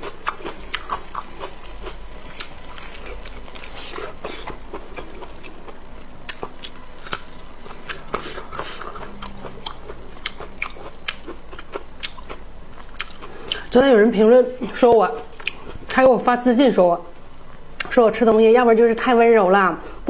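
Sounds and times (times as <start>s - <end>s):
person chewing wetly: 0.0s - 13.7s, 15.2s - 15.8s.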